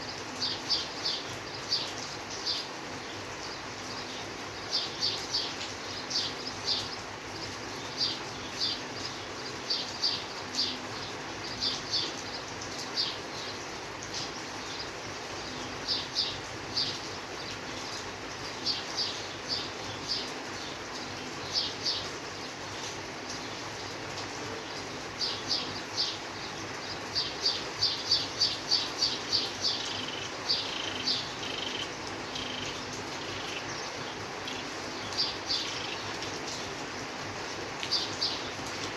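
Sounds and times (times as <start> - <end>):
steady rain: 0.0 - 38.9
bird chirping: 25.2 - 36.2.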